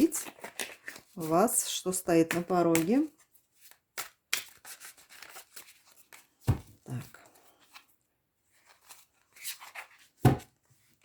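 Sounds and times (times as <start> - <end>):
cards being shuffled: 0.0 - 6.4.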